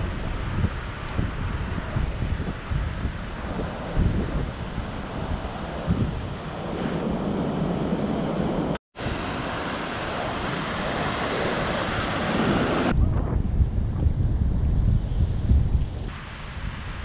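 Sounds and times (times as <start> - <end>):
wind buffeting microphone: 0.0 - 17.0
surf washing onto beach: 9.0 - 12.9.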